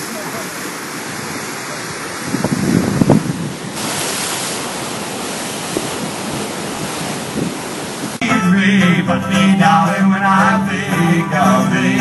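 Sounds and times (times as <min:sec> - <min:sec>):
ocean surf on rocky shore: 0:00.0 - 0:08.2
wind buffeting microphone: 0:01.0 - 0:08.2.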